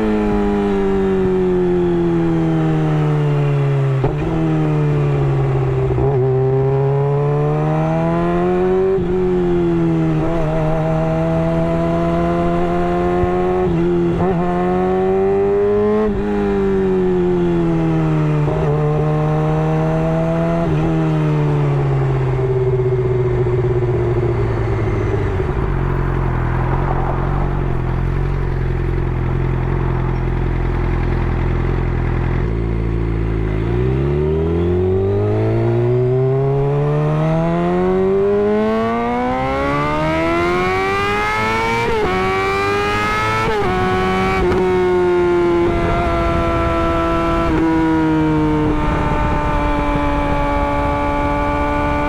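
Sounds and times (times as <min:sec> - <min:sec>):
motorcycle engine revving: 0:00.0 - 0:52.0.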